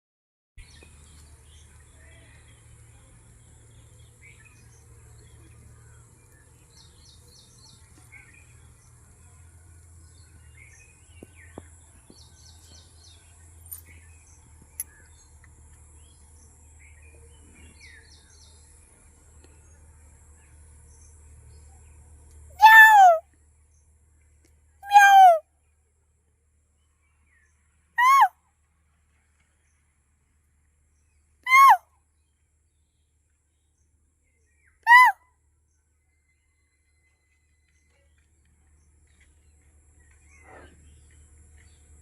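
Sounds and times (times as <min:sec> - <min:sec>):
peafowl call: 0:22.6 - 0:23.2, 0:24.8 - 0:25.4, 0:28.0 - 0:28.3, 0:31.5 - 0:31.8, 0:34.9 - 0:35.2
small birds chirping: 0:24.8 - 0:25.4, 0:27.0 - 0:28.3.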